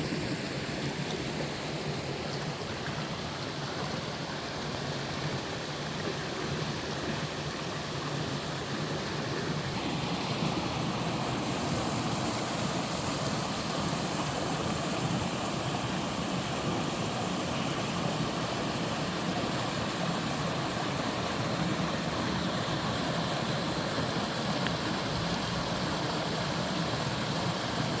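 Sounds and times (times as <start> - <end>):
waterfall rushing: 8.4 - 28.0.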